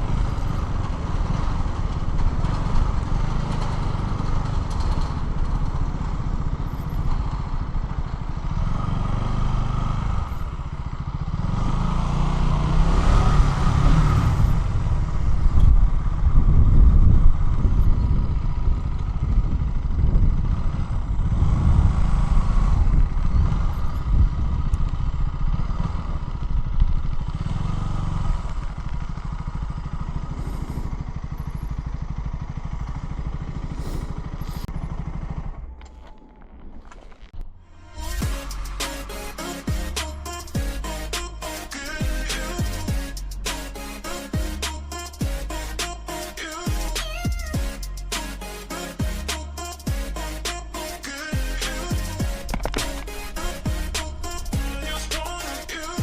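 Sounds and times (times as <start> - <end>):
motorcycle engine while riding: 0.0 - 56.0
rush of noise: 30.2 - 31.3, 33.6 - 34.7, 37.5 - 56.0.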